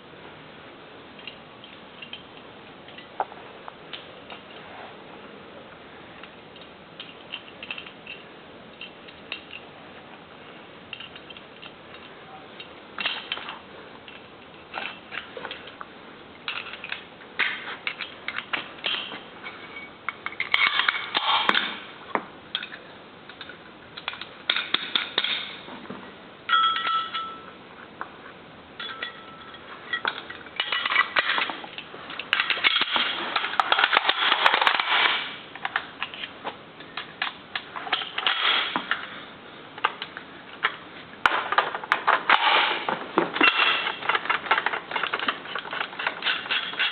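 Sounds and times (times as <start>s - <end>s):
metal gun parts clicking: 1.2s - 3.1s, 6.2s - 9.7s, 10.9s - 15.8s, 16.4s - 19.2s, 19.8s - 21.8s, 22.5s - 25.6s, 28.8s - 39.1s, 39.8s - 46.9s
metallic rings: 17.6s - 21.5s, 26.5s - 27.6s, 28.8s - 31.6s.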